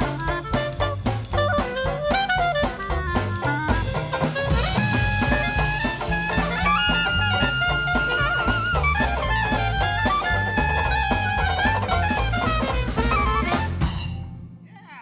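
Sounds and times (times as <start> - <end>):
jazz band playing live: 0.0 - 14.4
horn holding long note: 4.4 - 10.6.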